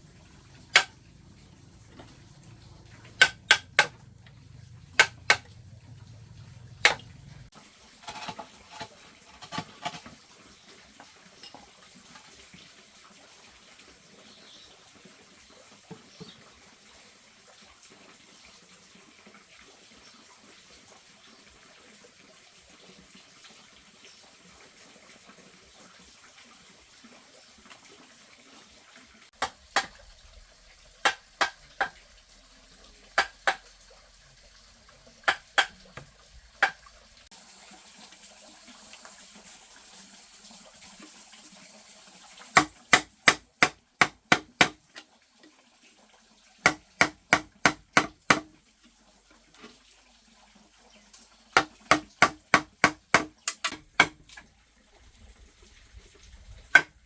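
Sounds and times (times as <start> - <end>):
sharp knocks: 0.7 - 0.9, 5.0 - 5.5.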